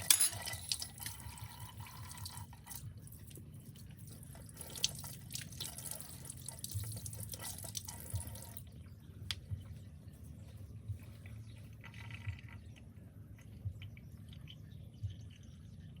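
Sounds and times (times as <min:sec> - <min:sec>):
water dripping: 0:00.2 - 0:09.8.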